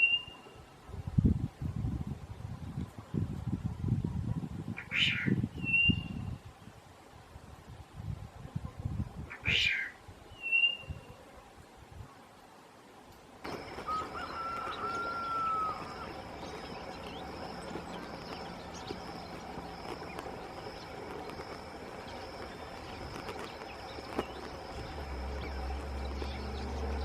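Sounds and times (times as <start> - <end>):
faint high-pitched whine: 5.4 - 27.0.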